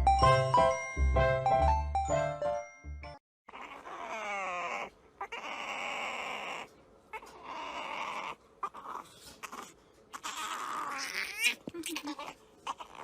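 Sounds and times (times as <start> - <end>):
puppy whining and whimpering: 3.5 - 13.0.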